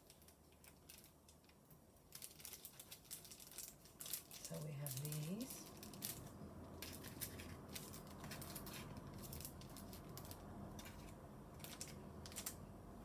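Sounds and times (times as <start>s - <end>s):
paper packages clicking and rustling: 0.0s - 12.6s.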